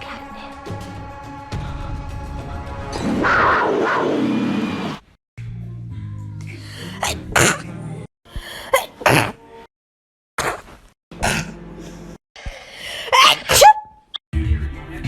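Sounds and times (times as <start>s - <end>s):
person sneezing: 6.7s - 7.7s, 8.4s - 9.4s, 10.4s - 11.6s, 12.4s - 13.9s.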